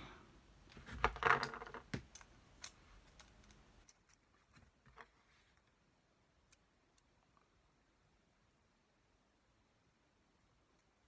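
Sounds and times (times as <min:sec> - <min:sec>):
small plastic parts clicking: 0:00.8 - 0:05.7.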